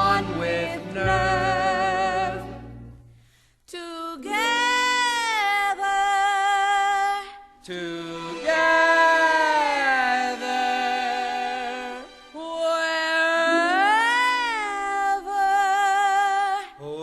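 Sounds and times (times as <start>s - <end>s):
singers holding notes with vibrato: 0.0s - 3.0s, 7.7s - 16.4s.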